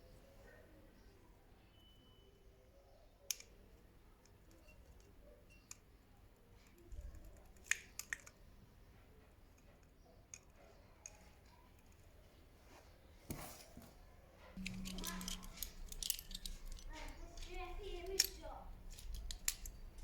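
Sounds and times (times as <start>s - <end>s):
sharp clicks and light knocks: 6.6s - 8.4s, 14.6s - 20.0s.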